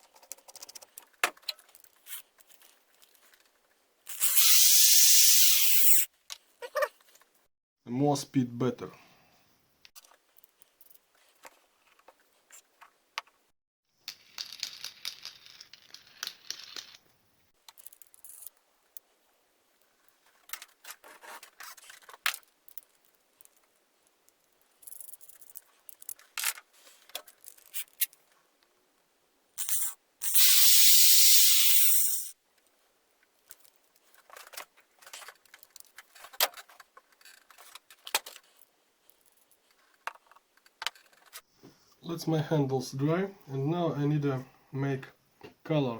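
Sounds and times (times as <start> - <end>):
loud hiss: 4.1 - 6.1, 29.6 - 32.4.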